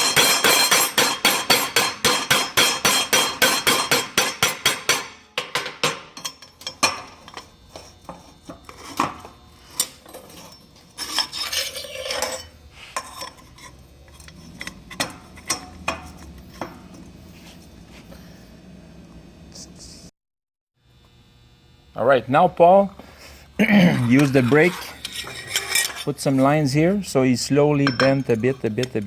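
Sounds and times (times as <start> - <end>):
scraping rub: 9.6 - 18.3, 23.7 - 26.6
metal parts clinking and knocking: 27.8 - 29.0.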